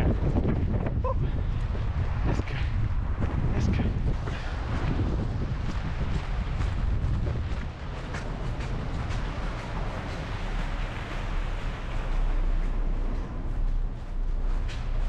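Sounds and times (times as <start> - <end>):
wind buffeting microphone: 0.0 - 15.0
footsteps crunching through snow: 3.0 - 15.0.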